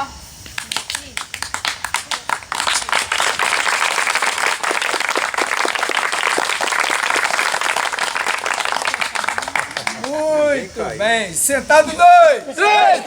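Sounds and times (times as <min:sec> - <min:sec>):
fast hand clapping: 0:00.4 - 0:10.2.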